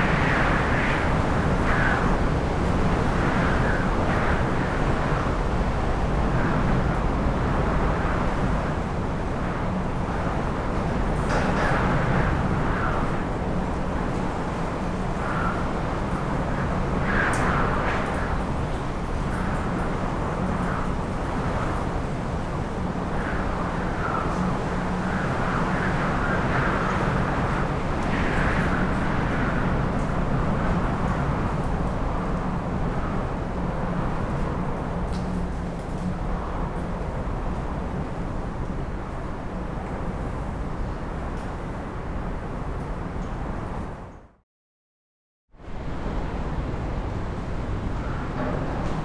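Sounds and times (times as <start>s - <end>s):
heavy storm wind gusting: 0.0s - 44.0s, 45.6s - 49.0s
wind rumbling: 45.7s - 49.0s.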